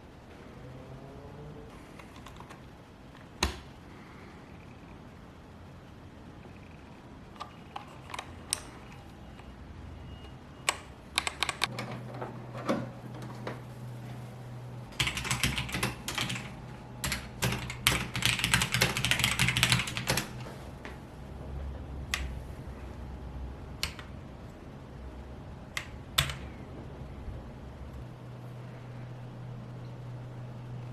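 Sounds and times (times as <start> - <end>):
typing on mechanical keyboard: 1.9 - 2.6, 10.7 - 11.9, 15.0 - 20.4, 23.8 - 24.1, 25.8 - 26.5.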